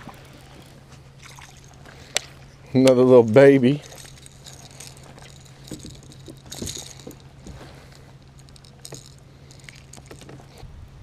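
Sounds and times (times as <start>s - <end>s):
fishing tackle clicking: 3.8s - 7.3s.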